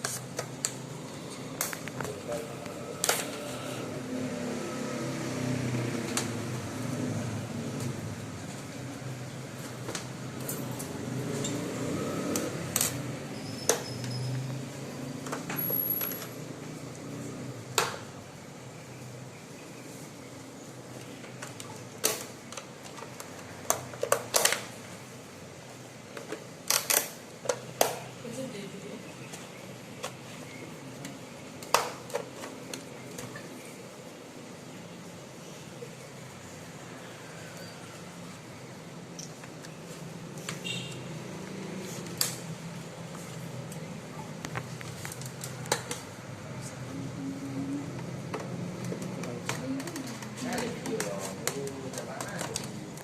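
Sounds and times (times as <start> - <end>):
plastic cover clicking and snapping: 21.3 - 24.7, 48.3 - 53.0.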